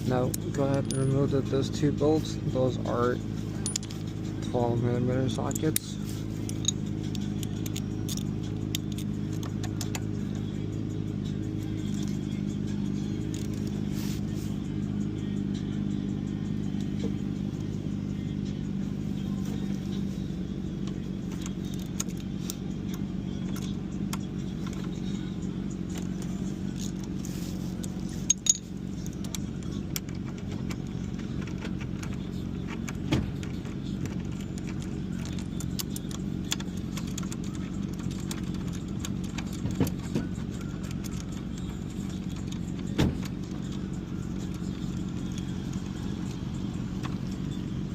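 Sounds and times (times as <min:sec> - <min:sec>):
steady low hum: 0:00.0 - 0:47.9
metal tools clinking and scraping: 0:00.1 - 0:09.8, 0:26.6 - 0:29.4.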